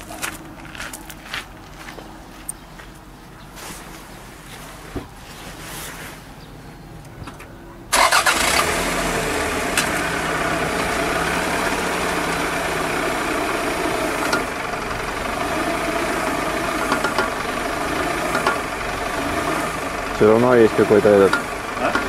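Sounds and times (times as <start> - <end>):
car engine starting and running: 7.0 - 22.0.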